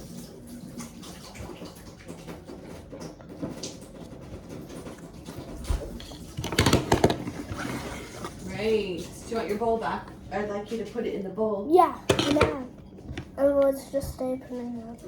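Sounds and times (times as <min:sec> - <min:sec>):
slime squelching: 0:02.6 - 0:10.3.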